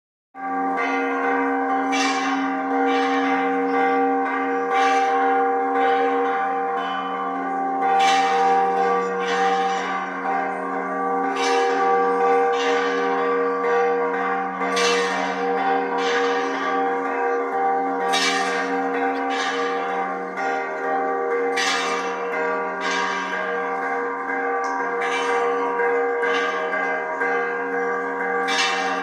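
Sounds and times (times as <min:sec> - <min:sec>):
church bells ringing: 0:00.4 - 0:29.0.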